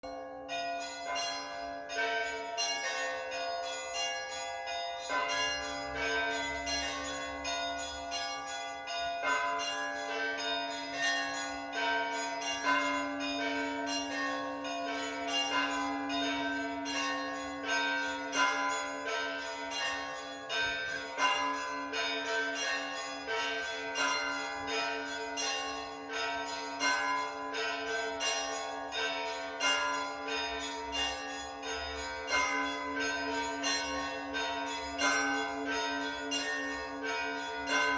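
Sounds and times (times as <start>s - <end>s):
church bells pealing: 0.0s - 37.9s
steady low bell tone: 0.0s - 37.9s.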